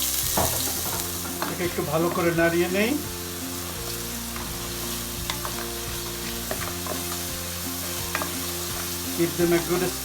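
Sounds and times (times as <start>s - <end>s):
food sizzling in oil: 0.0s - 10.0s.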